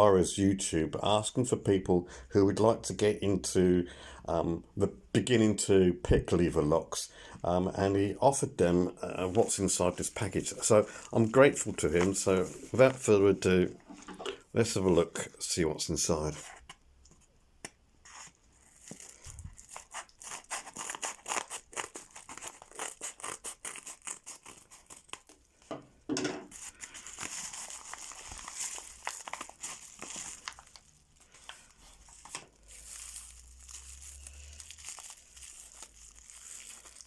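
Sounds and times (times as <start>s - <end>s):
packaging crinkling and tearing: 9.1s - 13.2s, 18.1s - 25.7s, 26.5s - 37.0s.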